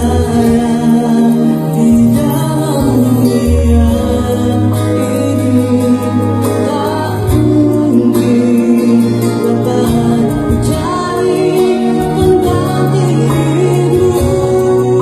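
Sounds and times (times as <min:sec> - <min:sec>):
instrumental pop ballad music: 0:00.0 - 0:15.0.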